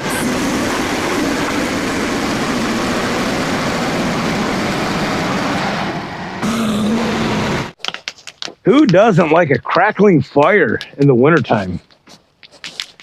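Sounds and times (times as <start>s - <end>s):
sawmill engine running: 0.0s - 7.8s.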